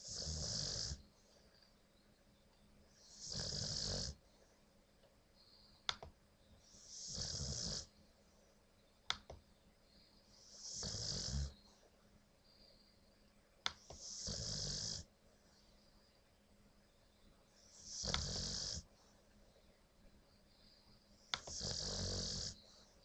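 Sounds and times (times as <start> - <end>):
dog snoring: 0.0 - 1.0, 3.1 - 4.2, 6.8 - 7.9, 10.6 - 11.6, 14.0 - 15.1, 17.8 - 18.9, 21.4 - 22.6.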